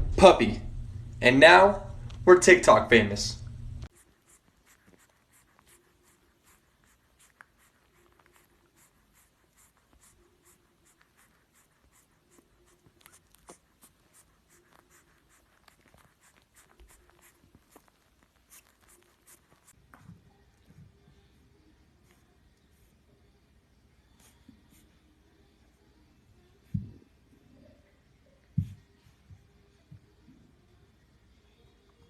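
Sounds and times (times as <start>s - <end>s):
faint scratching and clicking: 3.4s - 23.0s.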